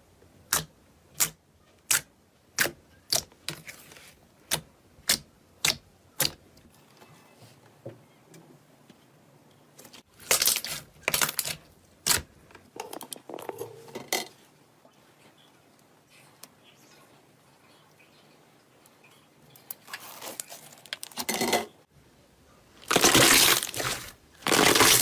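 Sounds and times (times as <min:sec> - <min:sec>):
slime crackling: 0:22.8 - 0:25.0.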